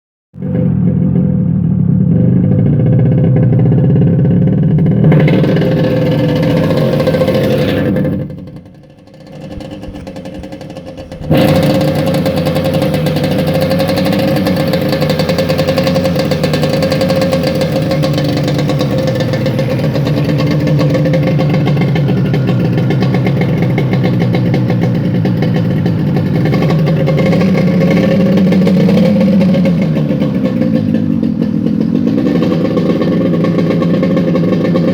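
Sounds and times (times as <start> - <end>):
jet engine running: 8.9 - 34.9.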